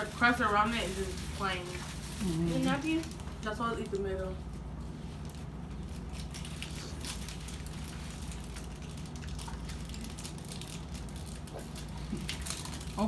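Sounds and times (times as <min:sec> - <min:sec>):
food being chewed and crunched: 0:04.5 - 0:13.0.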